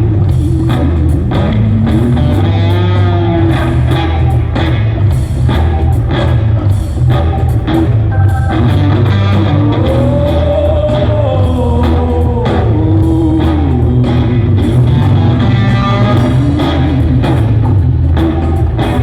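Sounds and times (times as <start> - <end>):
rock band playing live: 0.0 - 19.0
melody line sliding down: 8.1 - 10.2.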